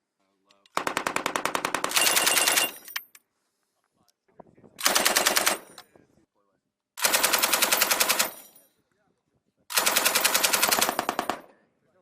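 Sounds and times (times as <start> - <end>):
machine gun bursts: 0.8 - 2.8, 4.8 - 5.7, 7.0 - 8.4, 9.7 - 11.4.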